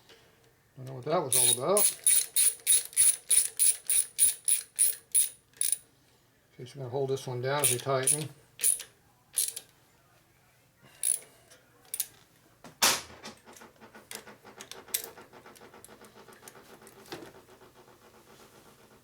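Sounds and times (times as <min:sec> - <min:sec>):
fast even ratchet ticking: 0:01.3 - 0:05.8, 0:07.6 - 0:08.8
hand tools clicking against metal: 0:01.3 - 0:05.8, 0:07.6 - 0:09.6.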